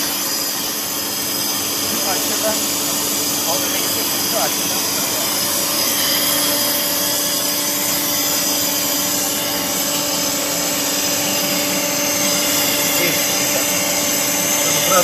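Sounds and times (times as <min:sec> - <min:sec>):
welding machine hissing: 0:00.0 - 0:15.0.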